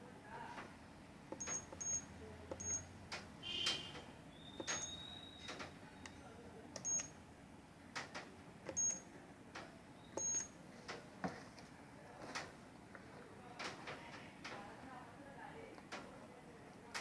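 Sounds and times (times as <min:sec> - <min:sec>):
short high beeps: 0:01.4 - 0:02.0, 0:02.6 - 0:02.9, 0:04.5 - 0:05.5, 0:10.2 - 0:10.5.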